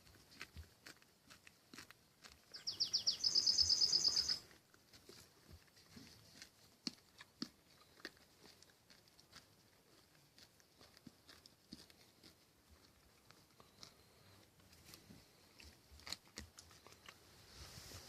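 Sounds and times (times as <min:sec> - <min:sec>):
songbird singing with trill: 0:02.5 - 0:04.4.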